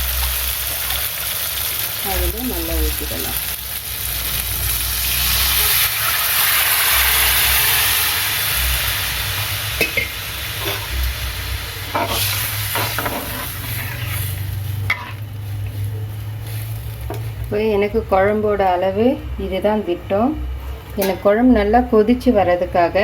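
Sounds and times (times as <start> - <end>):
liquid sizzling in hot oil: 0.0 - 19.1
spoon scraping a pan: 9.8 - 11.0, 11.9 - 17.4, 21.0 - 21.3.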